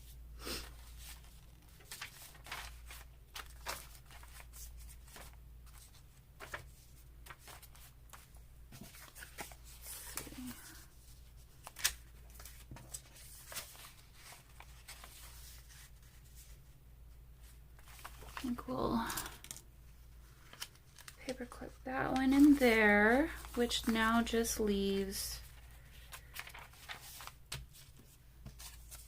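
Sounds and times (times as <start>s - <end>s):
paper rustling and crinkling: 0.6s - 16.6s, 17.4s - 29.0s.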